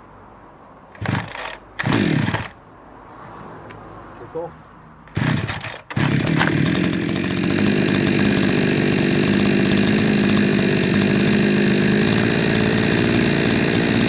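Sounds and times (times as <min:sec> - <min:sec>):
chainsaw engine idling: 0:01.0 - 0:02.6, 0:05.1 - 0:14.0
chainsaw engine starting: 0:01.0 - 0:02.6, 0:05.1 - 0:14.0.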